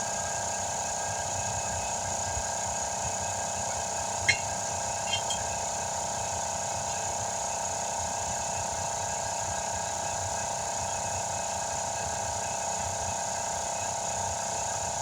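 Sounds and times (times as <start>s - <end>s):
air compressor humming: 4.3s - 5.4s.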